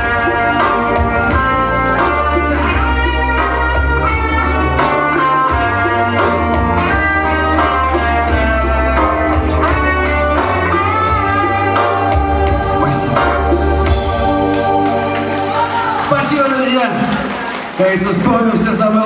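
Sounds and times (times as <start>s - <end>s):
lead guitar with bent notes: 0.0s - 14.8s
steady low bass: 0.0s - 14.9s.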